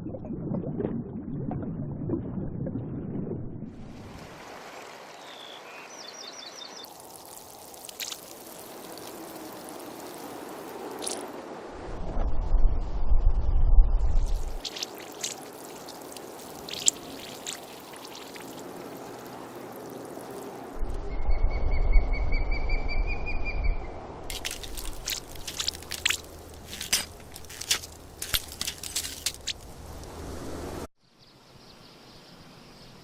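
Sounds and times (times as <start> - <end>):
water drips: 6.8 - 11.4, 14.3 - 20.8, 24.3 - 30.2
water trickling and pouring: 6.8 - 11.4, 14.3 - 20.8, 24.3 - 30.2
low rumble: 11.7 - 14.6.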